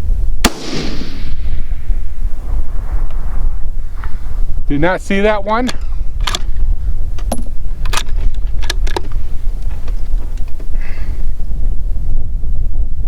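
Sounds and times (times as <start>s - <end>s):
wind rumble on microphone: 0.0s - 13.0s
rifle bolt metallic clicks: 5.6s - 6.5s.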